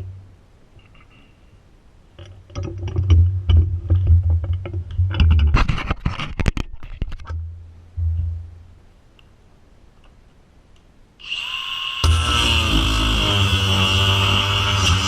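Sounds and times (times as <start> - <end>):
low hum: 0.0 - 10.1
knocks and rattles: 2.2 - 8.8
angle grinder cutting metal: 11.2 - 15.0.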